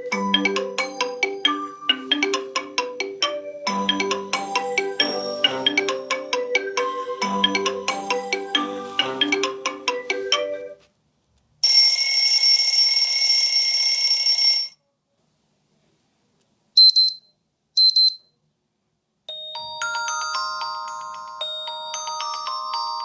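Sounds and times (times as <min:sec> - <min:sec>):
chiming ringtone melody: 0:00.0 - 0:10.8, 0:19.3 - 0:23.0.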